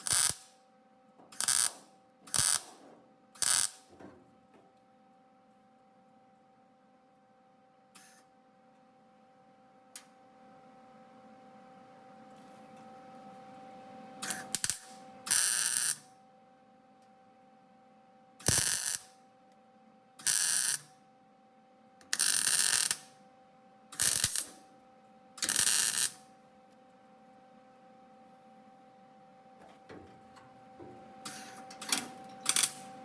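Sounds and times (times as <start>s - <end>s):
welder sputters: 0.0s - 0.4s, 1.3s - 2.7s, 3.4s - 3.8s
welder crackling bursts: 0.0s - 0.5s, 1.4s - 2.7s, 3.4s - 3.8s, 18.4s - 19.1s, 22.2s - 23.0s, 24.0s - 24.4s, 25.4s - 26.2s.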